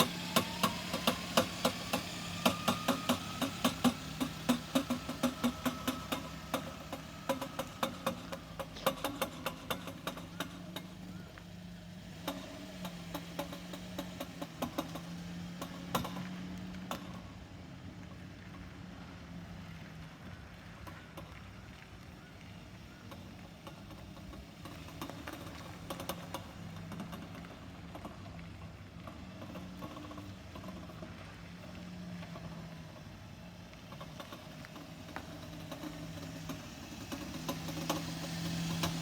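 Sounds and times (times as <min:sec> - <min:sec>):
rising whine: 0:00.0 - 0:07.6.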